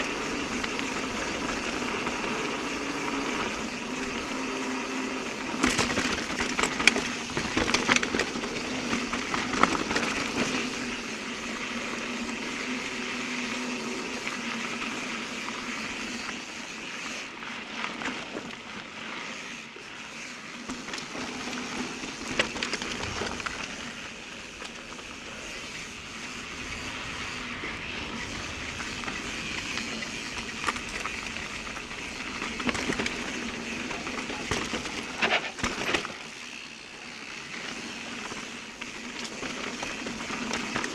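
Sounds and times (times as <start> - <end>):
bike rattles and knocks: 0.0 - 12.6, 20.5 - 25.2, 28.2 - 40.9
mountain bike tyre noise: 0.0 - 40.9.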